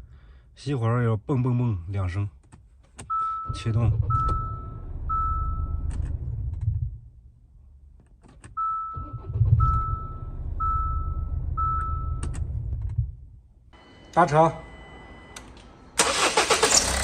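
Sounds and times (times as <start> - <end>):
dashboard warning chime beeping: 3.0 - 5.9, 8.6 - 12.4, 13.7 - 16.0
diesel engine running: 16.0 - 17.0.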